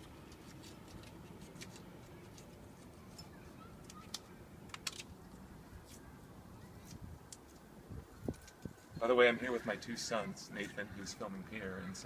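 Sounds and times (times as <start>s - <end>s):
foil crinkling and clicking: 0.0s - 3.2s.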